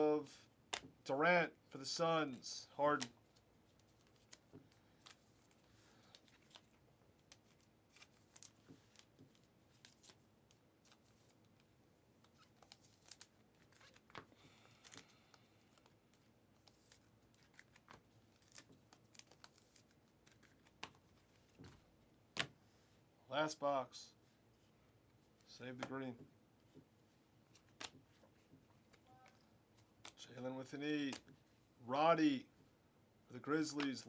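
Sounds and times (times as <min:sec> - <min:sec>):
cards and foil wrappers crinkling: 0:02.9 - 0:11.4, 0:12.4 - 0:21.6.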